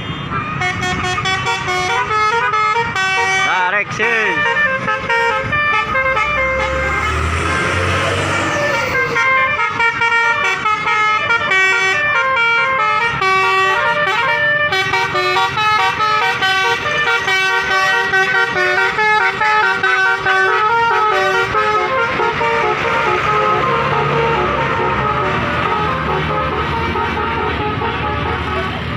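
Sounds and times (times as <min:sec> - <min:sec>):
bus musical horn playing tune: 0:00.0 - 0:28.9.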